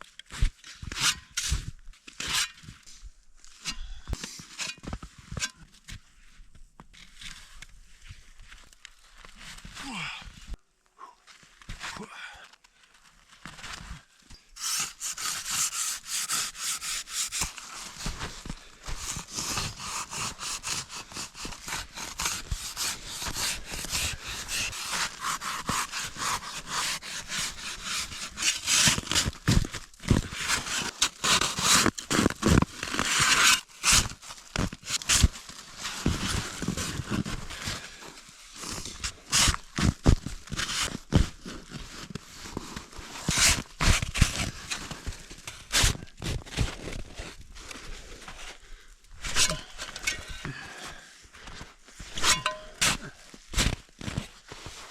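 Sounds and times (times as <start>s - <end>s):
snow shovel scraping snow: 13.5s - 48.6s, 49.2s - 54.9s
shovel blade knocking: 52.2s - 53.1s.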